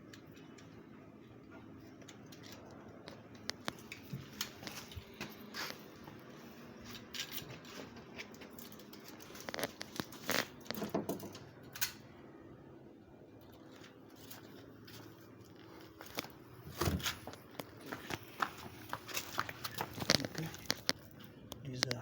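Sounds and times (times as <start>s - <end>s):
clicks scrapes and rustles: 6.8s - 12.0s, 17.0s - 22.0s.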